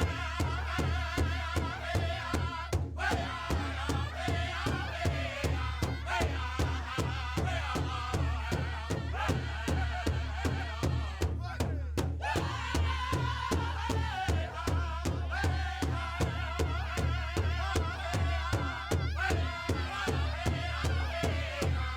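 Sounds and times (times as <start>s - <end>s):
steady drumbeat: 0.0s - 21.9s
wavering singing voices: 0.0s - 21.9s.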